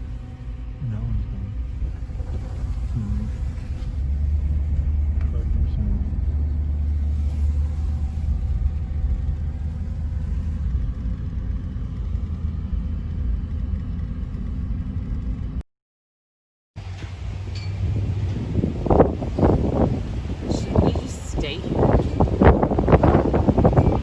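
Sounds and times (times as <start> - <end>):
steady low rumble: 0.0 - 15.6, 16.8 - 24.0.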